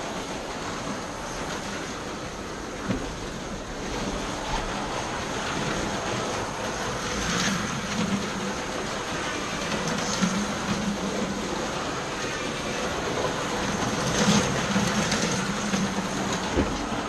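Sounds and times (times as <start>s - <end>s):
wheels rolling in track slots: 0.0s - 17.0s.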